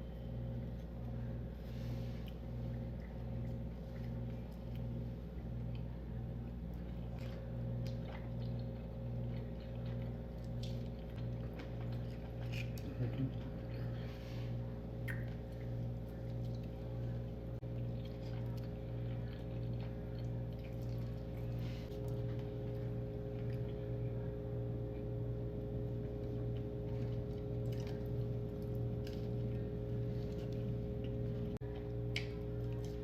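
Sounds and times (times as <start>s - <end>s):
low electrical hum: 0.0s - 33.0s
person chewing: 6.7s - 23.9s, 26.0s - 33.0s.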